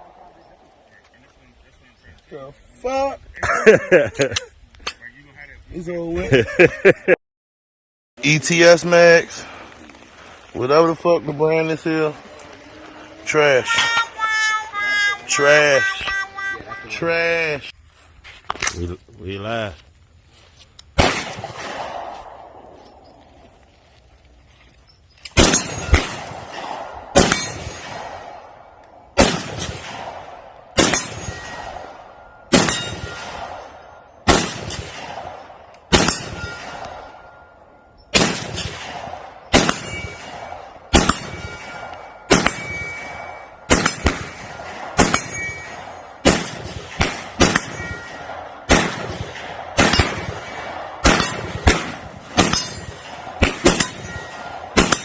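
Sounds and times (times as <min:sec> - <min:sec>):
pistol shots: 0:21.0 - 0:22.6, 0:25.4 - 0:37.5, 0:38.1 - 0:55.0
metallic ring of steel target: 0:25.4 - 0:26.5, 0:27.2 - 0:28.7, 0:30.8 - 0:35.1, 0:35.9 - 0:38.7, 0:39.5 - 0:55.0.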